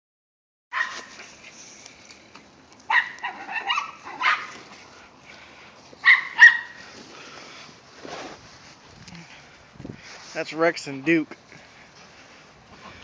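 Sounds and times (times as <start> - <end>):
dogs barking and yipping: 0.7 - 1.4, 2.8 - 5.0, 6.0 - 6.9.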